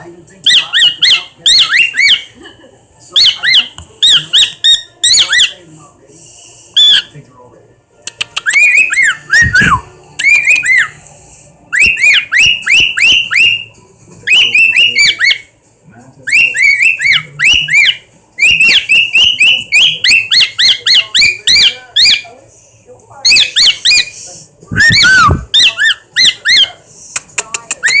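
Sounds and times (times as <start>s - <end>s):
sharp clicks: 8.1s - 8.5s
bird shrill whistled calls: 8.4s - 11.0s, 23.3s - 26.7s.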